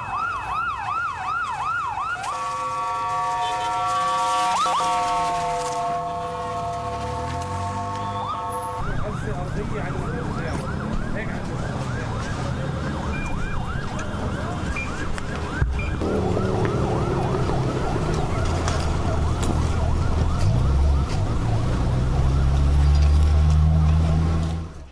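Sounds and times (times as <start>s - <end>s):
emergency sirens yelping: 0.0s - 24.9s
vehicle engines rumbling: 0.0s - 24.9s.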